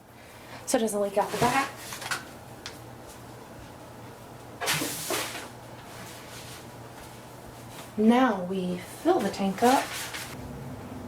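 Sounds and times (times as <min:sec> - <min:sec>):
faint steady hum: 0:00.0 - 0:11.0
plastic parts scraping rustle: 0:09.2 - 0:10.4.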